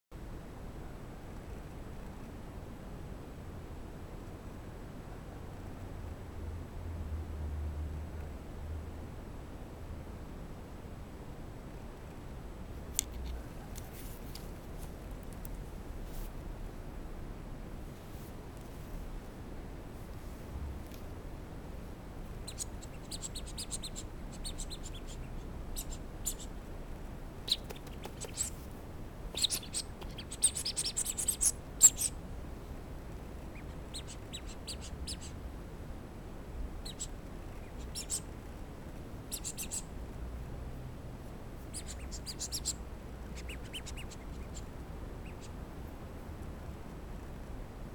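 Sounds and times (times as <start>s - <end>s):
puppy squeaking and whimpering: 29.4s - 32.1s.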